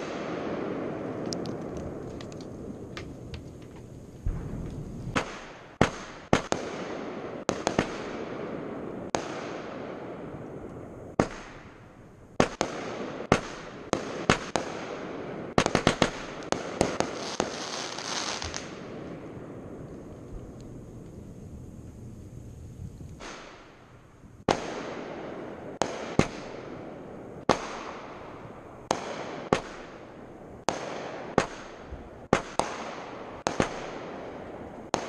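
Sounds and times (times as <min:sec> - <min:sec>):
rumbling haze: 0:00.0 - 0:06.3, 0:18.4 - 0:25.8
fireworks bangs: 0:00.0 - 0:35.0.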